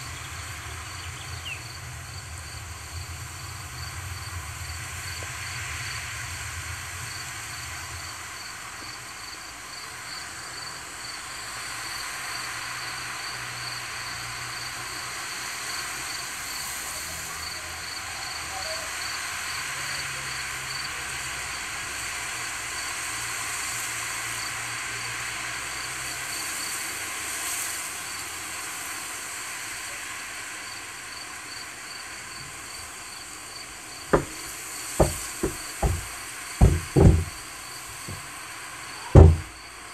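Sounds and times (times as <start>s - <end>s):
sharp knock: 34.2s - 37.4s, 39.1s - 39.6s.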